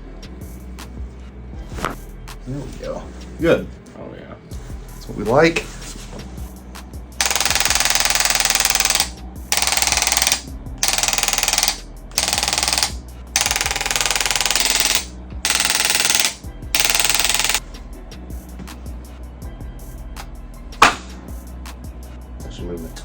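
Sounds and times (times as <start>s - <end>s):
electric percussion massager buzzing: 7.2s - 17.6s.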